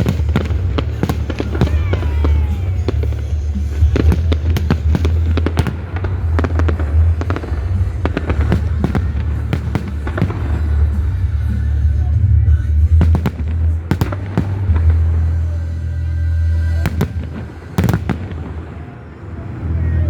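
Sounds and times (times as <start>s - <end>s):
falling firework whistle: 0.0s - 6.6s
fireworks bangs and crackles: 0.0s - 15.9s, 16.5s - 20.0s
low rumble: 0.0s - 18.7s.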